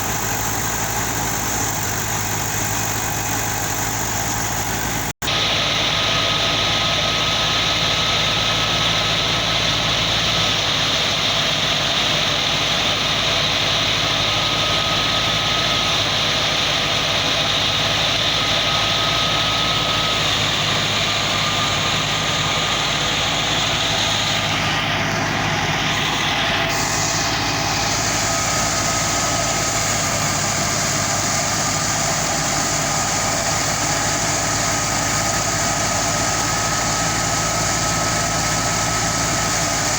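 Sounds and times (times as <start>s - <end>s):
engine hum: 0.0s - 39.9s
threshing machine hiss: 0.0s - 39.9s.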